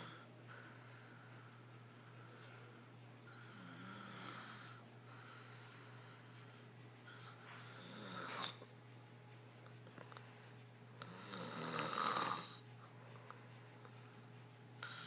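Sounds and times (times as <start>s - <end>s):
girl snoring: 0.0s - 0.3s, 3.3s - 4.8s, 7.7s - 8.6s, 11.0s - 12.6s.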